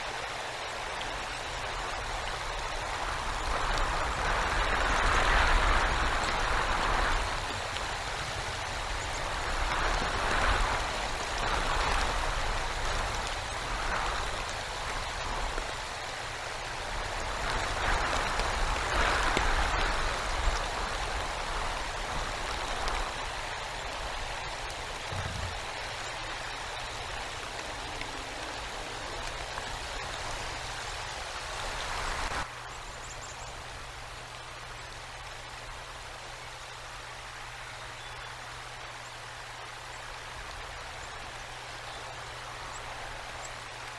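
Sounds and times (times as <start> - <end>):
icy rain and snow hissing: 0.0 - 43.9
wind gusting: 1.2 - 32.5.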